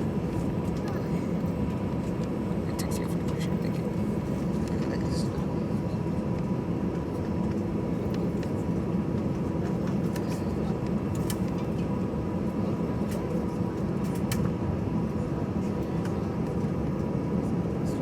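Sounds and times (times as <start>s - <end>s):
jet engines rumbling: 0.0s - 18.0s.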